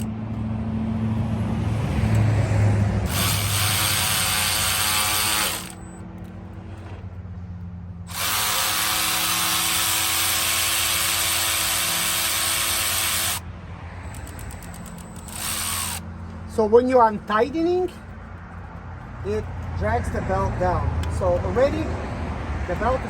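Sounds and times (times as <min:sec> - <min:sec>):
cordless ratchet running: 0:03.1 - 0:06.0, 0:08.1 - 0:13.4, 0:14.1 - 0:16.1.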